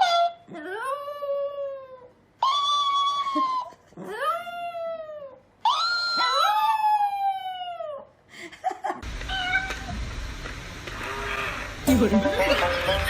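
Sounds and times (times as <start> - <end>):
pets giving drawn-out calls: 2.4 - 3.7.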